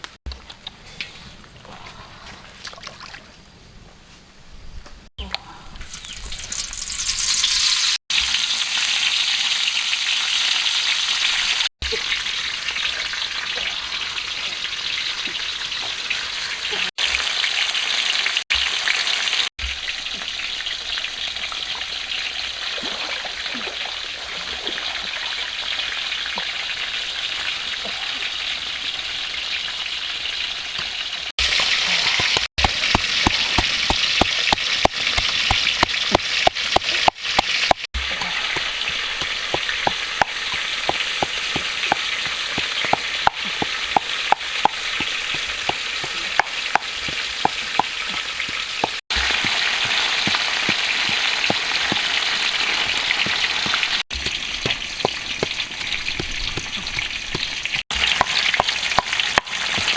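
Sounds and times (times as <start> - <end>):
food sizzling in hot oil: 5.9 - 13.5.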